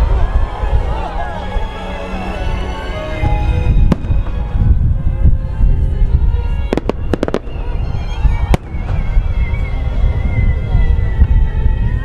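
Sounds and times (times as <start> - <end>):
fireworks booming: 3.9 - 4.6, 6.7 - 10.1
fireworks sharp cracks: 6.7 - 7.8.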